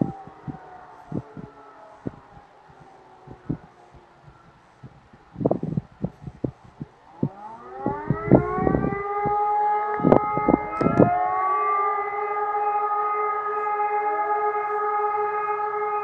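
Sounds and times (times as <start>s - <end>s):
distant siren: 0.0s - 16.0s.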